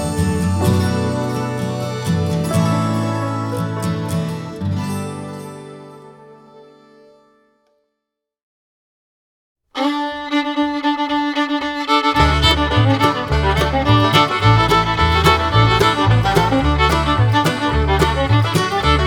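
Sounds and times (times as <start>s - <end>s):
bass line: 0.0s - 3.8s, 12.1s - 19.0s
instrumental background music: 9.8s - 19.0s.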